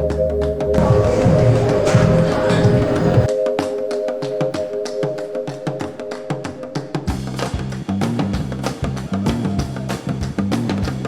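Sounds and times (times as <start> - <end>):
held chord of steady tones: 0.0 - 7.4.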